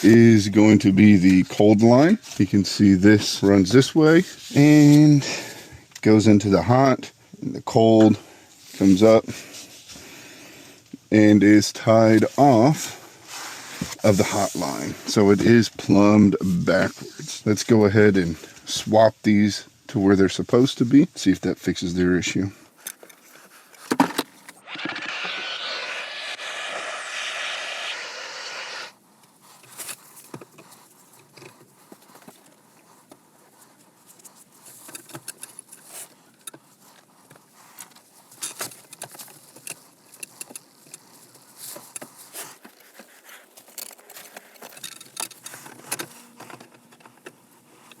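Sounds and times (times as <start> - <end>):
rushing hiss: 24.6 - 29.0.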